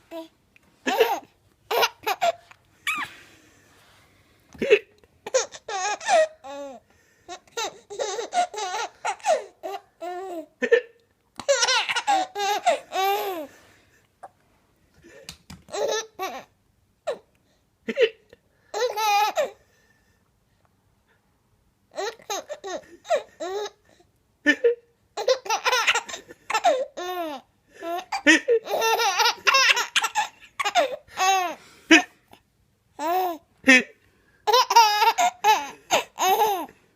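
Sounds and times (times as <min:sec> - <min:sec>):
baby laughing: 0:00.1 - 0:03.2, 0:04.6 - 0:10.8, 0:11.4 - 0:13.5, 0:15.7 - 0:16.5, 0:18.7 - 0:19.6, 0:21.9 - 0:23.9, 0:24.5 - 0:32.1, 0:33.0 - 0:33.9, 0:34.5 - 0:36.8.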